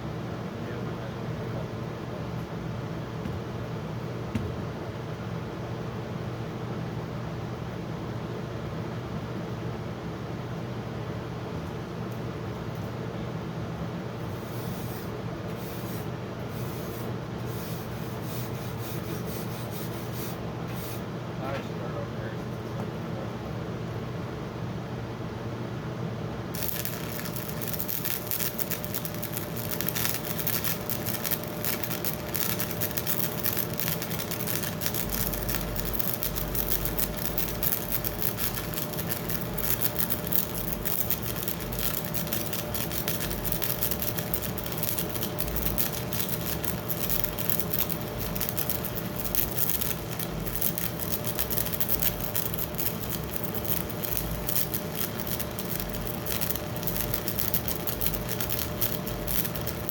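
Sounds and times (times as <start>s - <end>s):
welding arc crackling and sizzling: 26.5s - 59.9s
welder hum: 26.6s - 59.9s.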